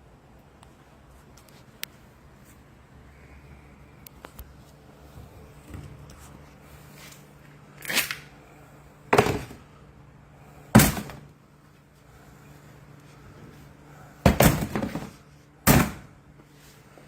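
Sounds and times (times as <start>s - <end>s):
faint steady hum: 0.0s - 17.0s
heavy thunks: 14.2s - 16.1s.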